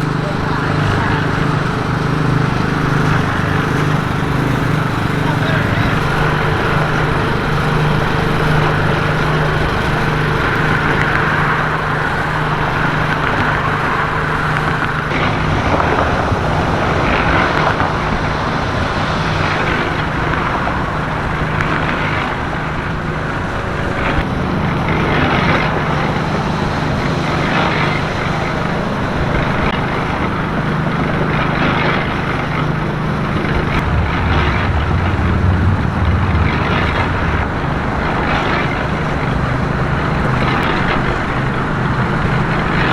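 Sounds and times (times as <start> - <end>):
low engine hum: 0.0 - 42.9
vehicles passing: 0.0 - 42.9
deep rumble: 32.3 - 42.9.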